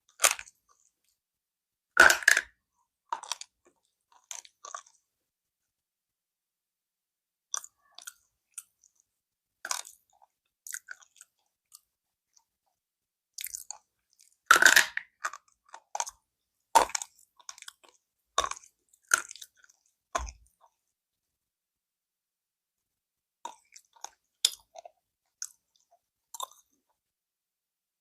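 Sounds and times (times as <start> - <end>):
crisp crunches of chewing: 0.1 - 0.9, 3.2 - 5.0, 7.6 - 9.0, 9.6 - 11.8, 13.4 - 16.2, 16.8 - 20.6, 23.5 - 26.8.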